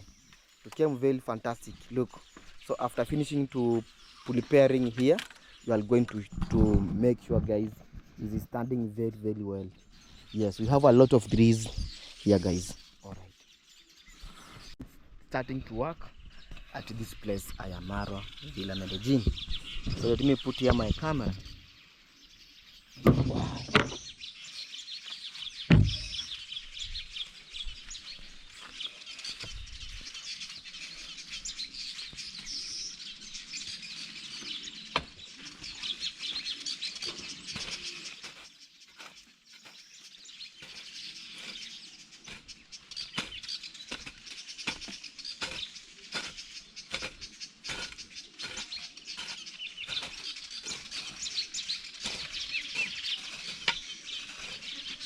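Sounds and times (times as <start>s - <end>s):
birds chirping: 0.0s - 55.0s
heavy thumps: 23.0s - 24.1s, 25.7s - 26.2s
short sharp knocks: 25.7s - 26.2s.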